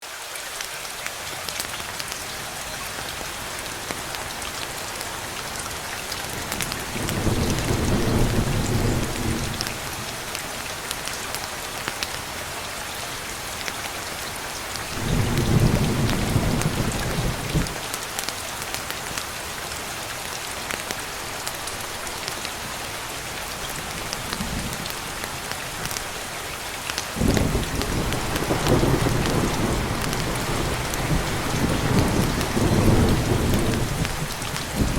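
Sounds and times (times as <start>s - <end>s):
heavy rain: 0.0s - 34.9s
thunder rumbling: 6.5s - 10.0s, 14.9s - 17.8s, 27.2s - 34.9s.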